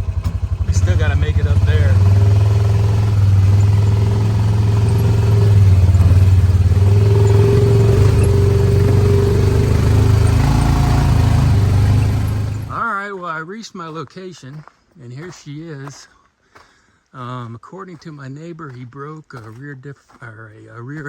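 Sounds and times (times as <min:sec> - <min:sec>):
engine running under load: 0:00.0 - 0:12.8
whine over engine: 0:00.0 - 0:12.8.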